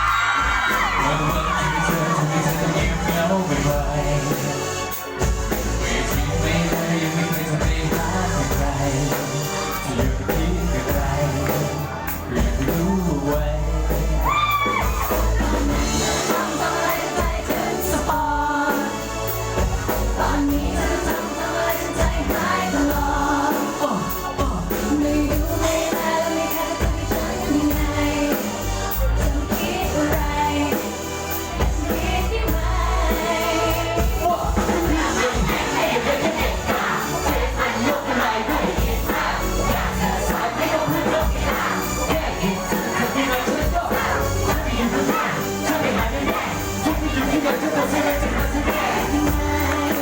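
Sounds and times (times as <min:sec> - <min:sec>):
pop song with band: 0:00.0 - 0:50.0
heavy bass beat: 0:31.6 - 0:50.0.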